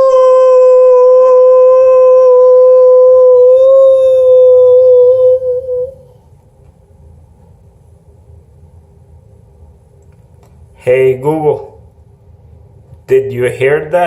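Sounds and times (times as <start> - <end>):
long loud howl: 0.0 - 6.2.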